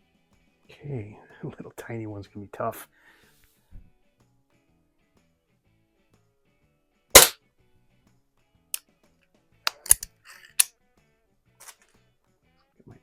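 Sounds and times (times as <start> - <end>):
air pistol shot: 7.2 - 7.4.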